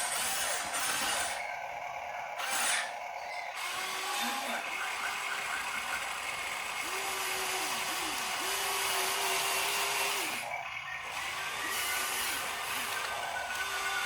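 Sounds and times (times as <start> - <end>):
small electric motor whining: 0.0 - 14.0.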